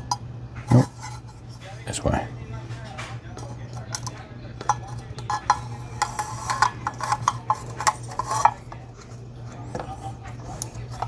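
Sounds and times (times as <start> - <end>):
plastic parts clicking and scraping: 2.9 - 11.0.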